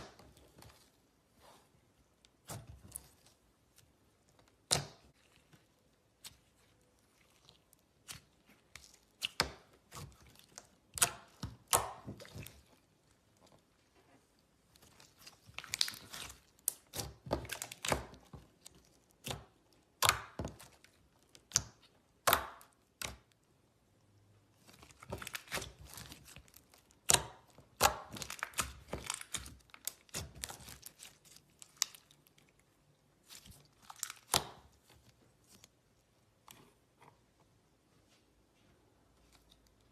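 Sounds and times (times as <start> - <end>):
slime clicking and popping: 8.0 - 12.6, 19.1 - 23.4.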